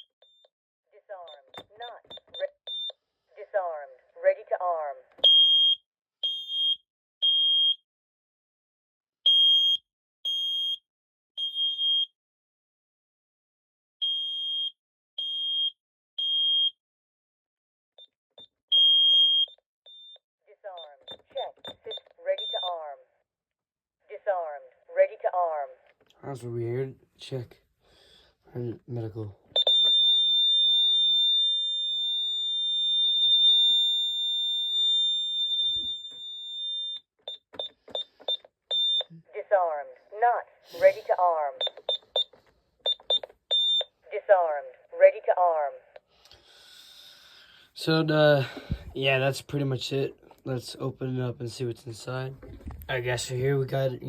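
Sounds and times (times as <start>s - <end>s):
alarm keypad beeping: 1.3s - 3.0s, 20.8s - 22.9s, 29.5s - 30.4s, 33.3s - 39.1s, 41.6s - 44.0s
high-pitched alarm tone: 29.6s - 39.1s.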